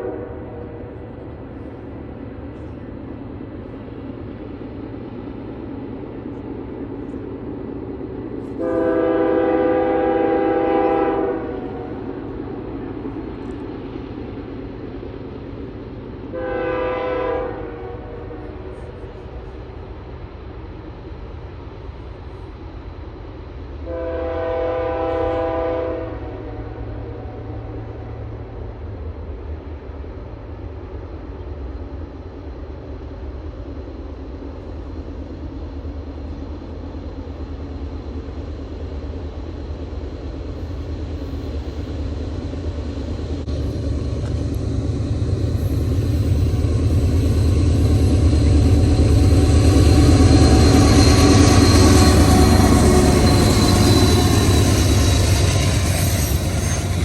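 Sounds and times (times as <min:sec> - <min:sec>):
locomotive air horn blasts: 0:00.0 - 0:01.0, 0:08.5 - 0:12.1, 0:16.3 - 0:18.9, 0:23.8 - 0:27.5
diesel train rumble: 0:00.0 - 0:57.0.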